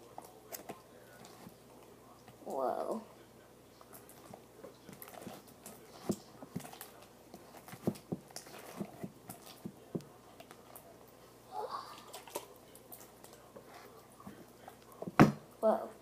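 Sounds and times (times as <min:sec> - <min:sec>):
wet slime squelching: 0:03.8 - 0:15.2.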